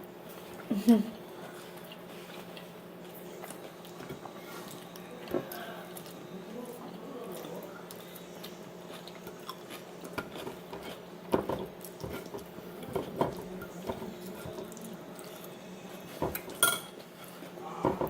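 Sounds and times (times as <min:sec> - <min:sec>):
plates and utensils clinking: 0:16.2 - 0:18.0.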